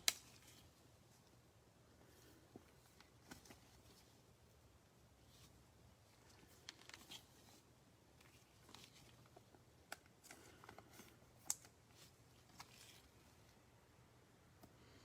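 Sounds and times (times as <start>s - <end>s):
cards and wrapper rustling: 8.2s - 13.3s.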